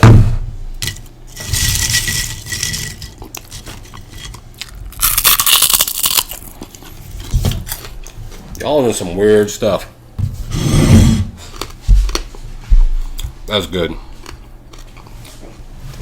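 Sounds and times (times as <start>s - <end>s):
pork rinds crunching: 0.8s - 8.2s.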